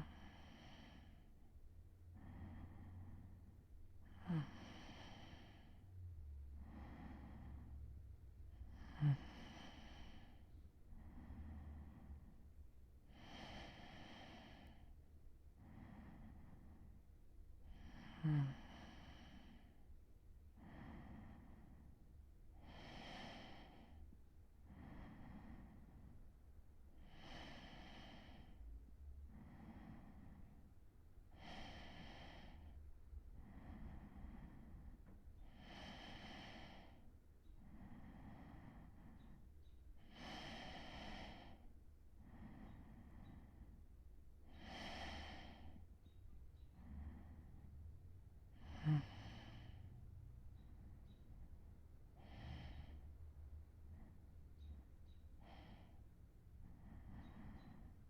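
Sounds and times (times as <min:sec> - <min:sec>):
man breathing slowly: 0:00.0 - 0:58.0.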